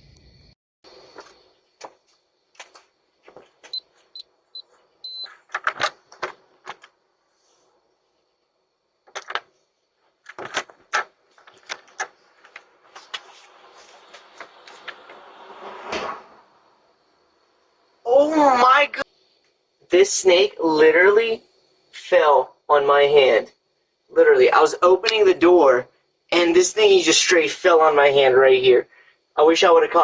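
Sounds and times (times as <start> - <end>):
short high beeps: 5.0 - 5.3
clicks and knocks: 5.3 - 6.9, 9.1 - 9.5, 10.2 - 13.3.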